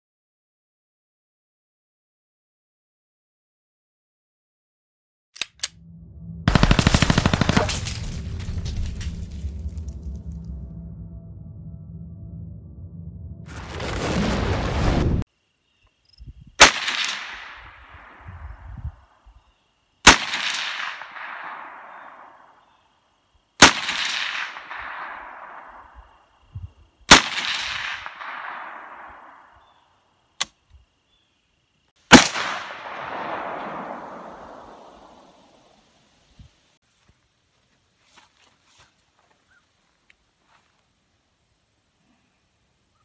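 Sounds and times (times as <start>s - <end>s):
gunshots echoing: 6.5s - 9.5s, 16.6s - 18.2s, 20.0s - 22.5s, 23.6s - 26.0s, 27.1s - 29.6s, 32.1s - 35.2s.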